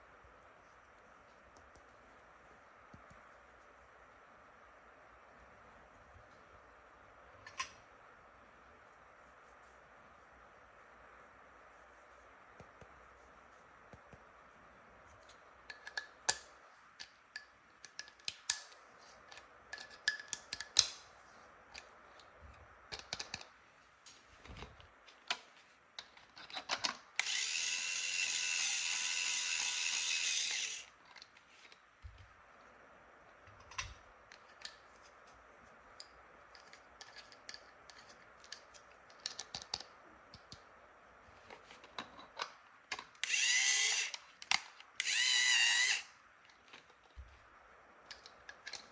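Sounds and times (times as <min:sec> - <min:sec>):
toy drill whirring: 0:27.2 - 0:31.0, 0:43.2 - 0:46.2
plastic toy parts clicking: 0:36.6 - 0:40.6, 0:42.3 - 0:46.1, 0:48.1 - 0:48.9.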